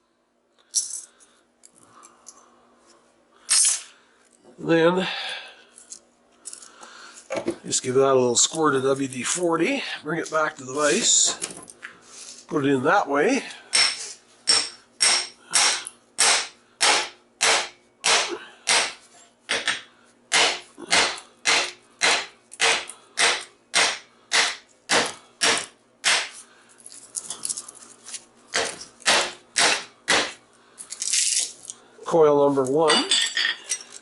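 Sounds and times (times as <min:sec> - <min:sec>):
hammer striking steel core: 0:13.7 - 0:26.3.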